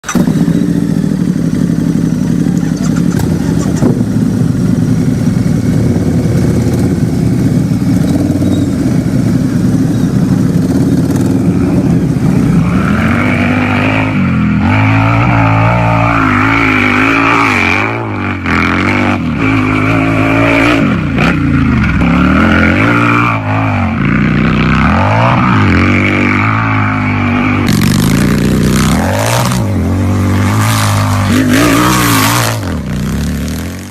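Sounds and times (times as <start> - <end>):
motorcycle engine idling: 0.0 - 12.6
motorcycle engine revving: 0.0 - 33.9.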